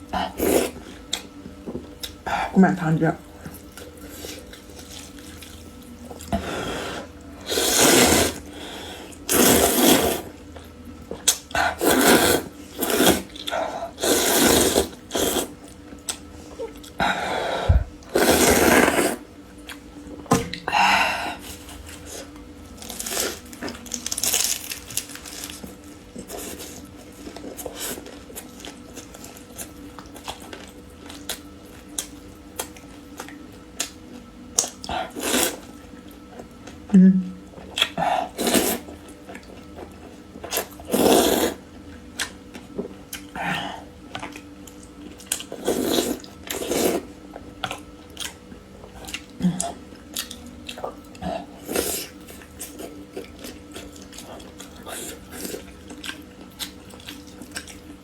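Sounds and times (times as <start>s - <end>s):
noodle slurps: 6.3s - 8.5s, 9.2s - 10.4s, 11.7s - 15.6s, 17.7s - 19.3s, 38.2s - 38.9s, 40.6s - 41.6s, 45.5s - 47.1s
wet chewing: 44.1s - 58.0s.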